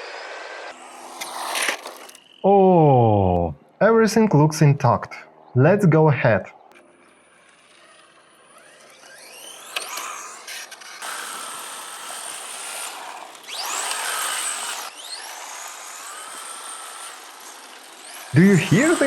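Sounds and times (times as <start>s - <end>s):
rc car motor whining: 0.0s - 2.4s, 6.6s - 19.0s.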